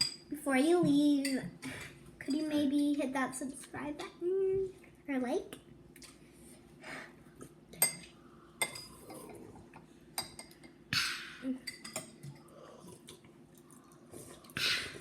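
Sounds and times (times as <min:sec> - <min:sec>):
cutlery clinking on bowls: 0:00.0 - 0:00.2, 0:10.2 - 0:10.8, 0:11.6 - 0:12.4.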